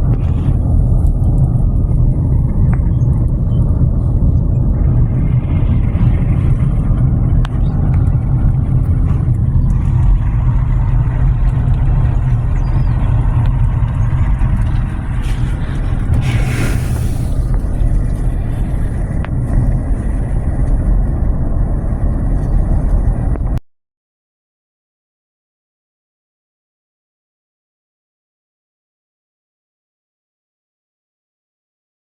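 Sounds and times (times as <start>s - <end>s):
car driving rumble: 0.0s - 23.6s
brief hiss: 16.2s - 17.6s.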